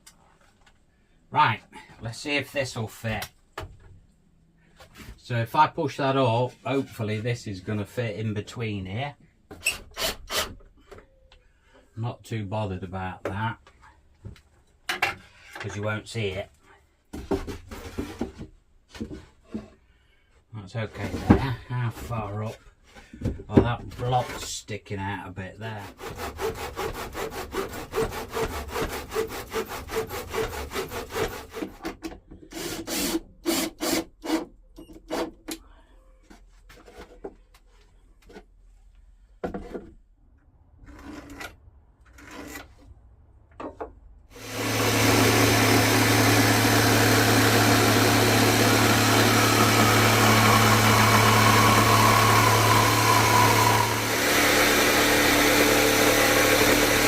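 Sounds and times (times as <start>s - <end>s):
hand saw cutting wood: 9.7s - 10.6s, 25.6s - 35.5s, 40.8s - 42.8s, 44.3s - 57.0s
loud machine drone: 44.4s - 57.0s.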